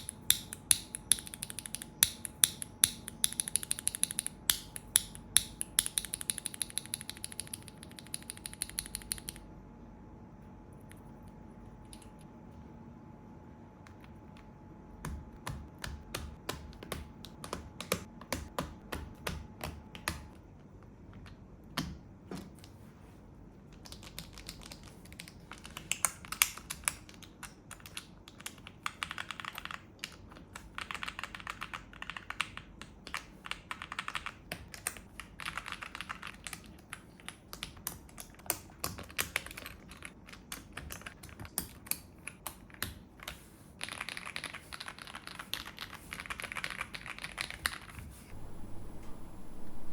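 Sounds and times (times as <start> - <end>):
mechanical keyboard typing: 0.0 - 9.4, 23.8 - 43.0, 43.8 - 47.9.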